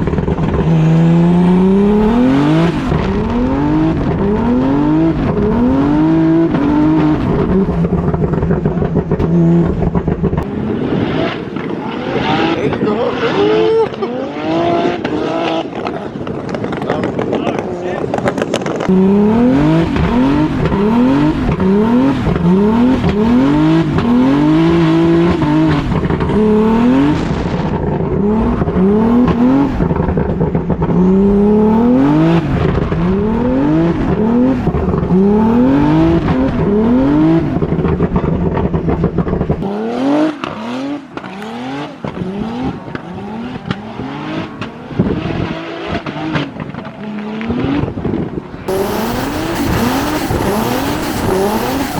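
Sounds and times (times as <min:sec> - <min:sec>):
car engine revving: 0:00.0 - 0:51.9.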